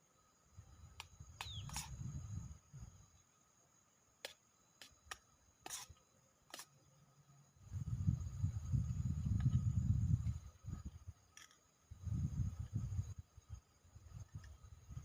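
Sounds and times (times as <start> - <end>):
insect chirring: 0.0 - 15.0
low rumble of wind: 0.4 - 3.2, 7.4 - 15.0.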